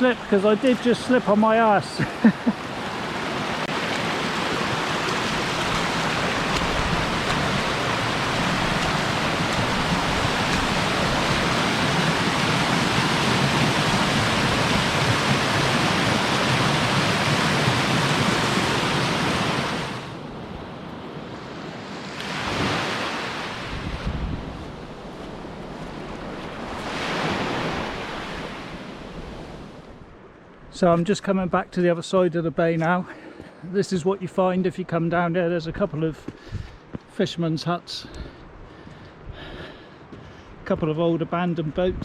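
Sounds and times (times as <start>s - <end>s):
waterfall splashing onto rocks: 3.7s - 17.7s.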